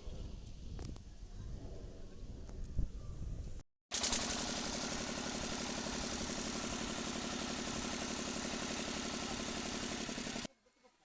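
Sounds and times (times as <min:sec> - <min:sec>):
diesel pump engine knocking: 0:04.2 - 0:10.5.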